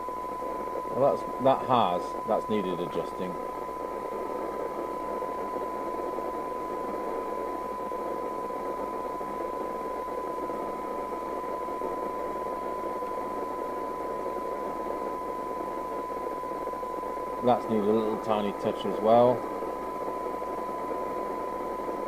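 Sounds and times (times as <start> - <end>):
radio hiss: 0.0 - 22.0
steady test tone: 0.0 - 22.0.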